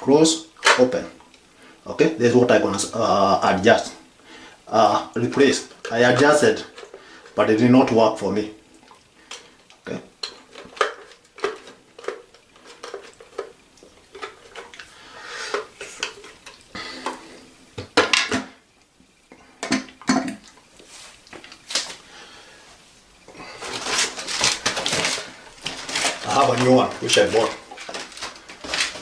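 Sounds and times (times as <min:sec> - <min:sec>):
plastic parts clicking and knocking: 0:10.2 - 0:14.9, 0:23.6 - 0:29.0
rustling: 0:20.7 - 0:29.0.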